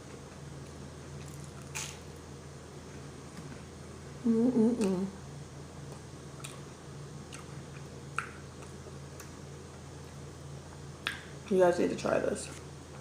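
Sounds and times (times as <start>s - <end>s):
person humming mmm: 4.2s - 5.2s
chewing smacks and clicks: 7.3s - 9.4s.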